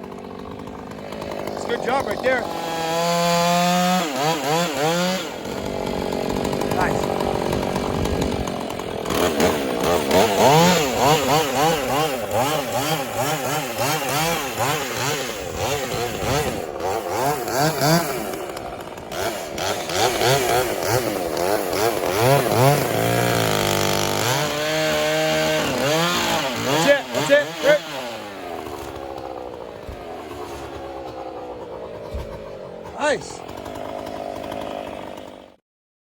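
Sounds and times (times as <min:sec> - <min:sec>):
chainsaw cutting wood: 0:00.0 - 0:35.6.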